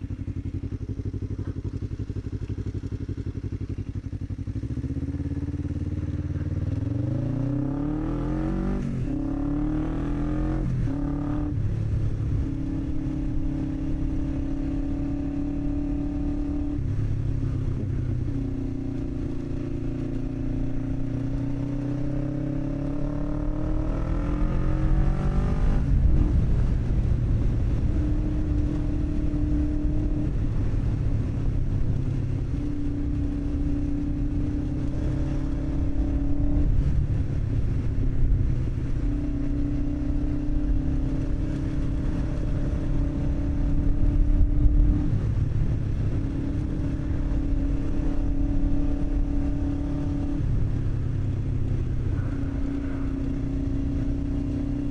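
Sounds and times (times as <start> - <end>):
motorcycle engine accelerating: 0.0 - 54.9
heavy wind rush: 23.9 - 39.8.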